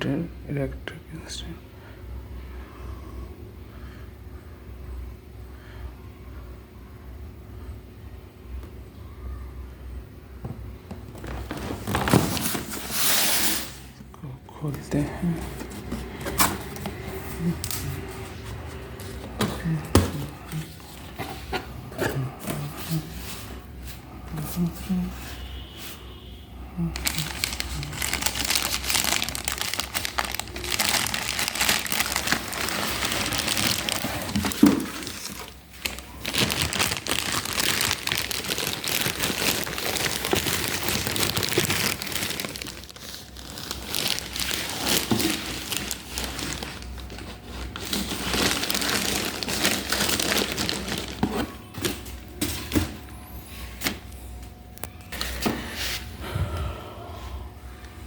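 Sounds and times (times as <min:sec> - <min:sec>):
packaging crinkling and rustling: 0:10.9 - 0:13.9, 0:14.6 - 0:23.7, 0:26.8 - 0:53.1.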